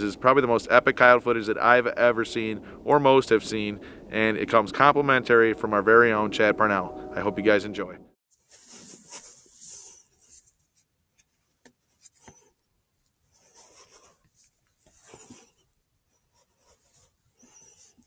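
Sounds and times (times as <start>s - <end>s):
faint rustling and scraping: 8.3s - 18.0s.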